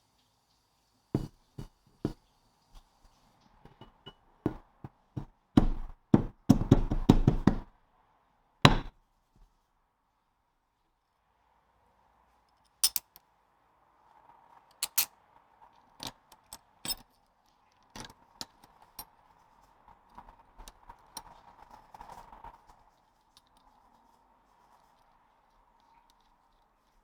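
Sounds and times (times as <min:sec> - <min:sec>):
metal tools clinking: 0:12.8 - 0:13.0, 0:16.8 - 0:17.0.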